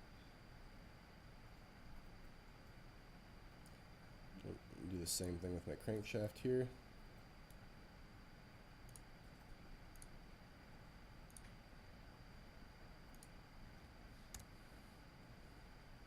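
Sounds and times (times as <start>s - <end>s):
faint steady high whine: 0.0s - 16.0s
computer mouse clicking: 8.8s - 10.2s, 11.2s - 11.6s, 13.1s - 13.4s, 14.3s - 14.5s.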